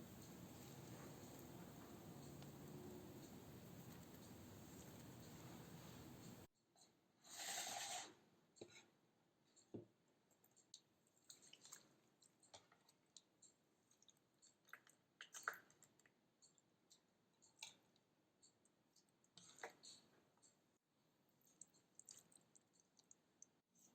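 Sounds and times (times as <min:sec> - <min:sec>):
faint scattered clicks: 0:00.0 - 0:06.5
steady hiss: 0:00.0 - 0:06.5.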